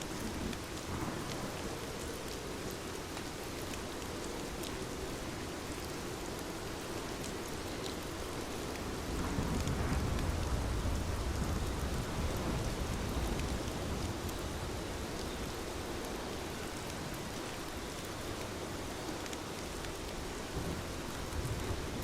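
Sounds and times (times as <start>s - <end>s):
low rumble of thunder: 0.0s - 2.9s, 8.8s - 16.2s, 20.5s - 22.0s
steady rain: 0.0s - 22.0s.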